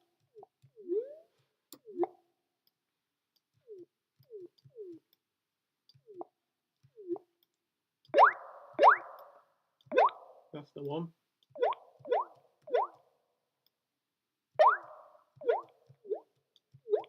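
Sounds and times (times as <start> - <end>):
synthesized water-drop pops: 1.8 - 2.2, 8.1 - 9.3, 9.9 - 10.4, 11.6 - 13.0, 14.6 - 17.0.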